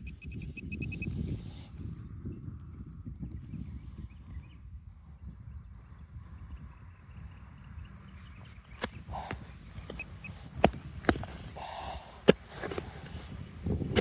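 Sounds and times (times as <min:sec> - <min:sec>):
tool scraping in soil: 0:08.1 - 0:14.0
sharp knocks of digging tool: 0:08.8 - 0:13.2.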